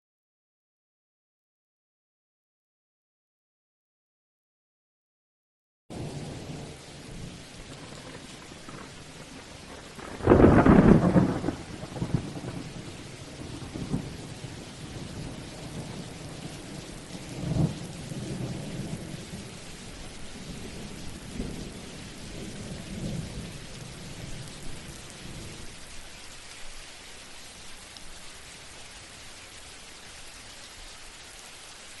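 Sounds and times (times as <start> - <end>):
loud thunderclap: 5.9 - 19.5, 20.4 - 25.6
rolling thunder: 5.9 - 25.7
steady rain: 5.9 - 32.0.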